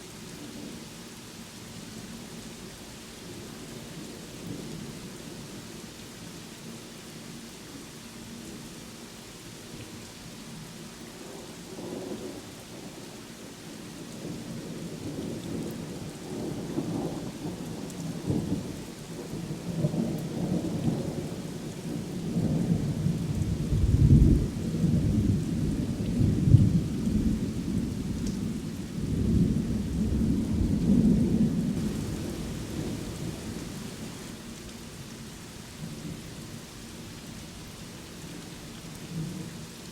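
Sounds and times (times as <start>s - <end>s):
steady rain: 0.0s - 39.9s
thunder rumbling: 29.1s - 34.3s.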